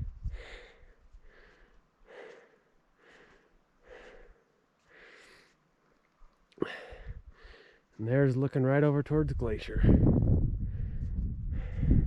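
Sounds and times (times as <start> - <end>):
person panting: 0.2 - 5.6, 6.6 - 7.9, 9.9 - 12.0.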